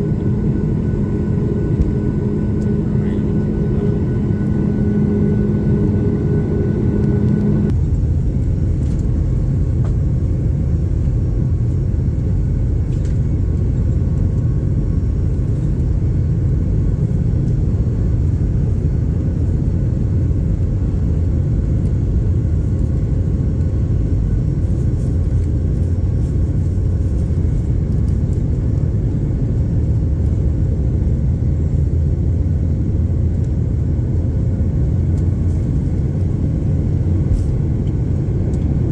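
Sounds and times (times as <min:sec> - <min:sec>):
humming tone: 0:00.0 - 0:08.4
airliner engines rumbling: 0:00.0 - 0:38.9.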